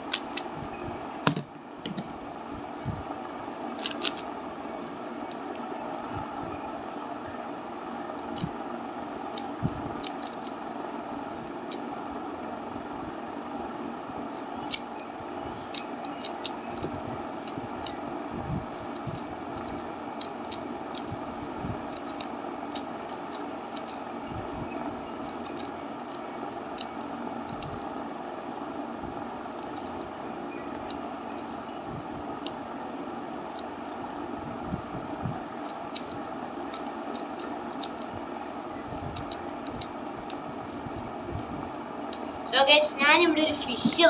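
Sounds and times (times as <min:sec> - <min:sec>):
puzzle cube plastic clicks: 0:00.0 - 0:00.5, 0:03.8 - 0:04.3, 0:09.3 - 0:10.6, 0:14.3 - 0:15.1, 0:15.7 - 0:18.0, 0:18.8 - 0:21.2, 0:21.8 - 0:24.0, 0:25.2 - 0:27.8, 0:29.5 - 0:30.1, 0:33.5 - 0:34.1, 0:35.0 - 0:38.2, 0:38.9 - 0:41.8
steady background hum: 0:00.0 - 0:44.0.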